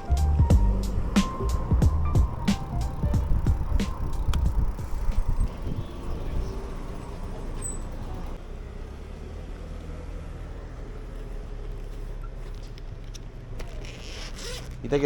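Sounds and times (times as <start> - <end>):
road traffic rumble: 0.0 - 15.0.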